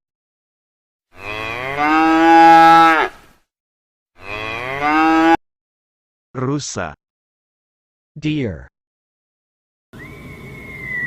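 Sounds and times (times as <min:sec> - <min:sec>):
cow mooing: 0:01.2 - 0:03.2, 0:04.2 - 0:05.4.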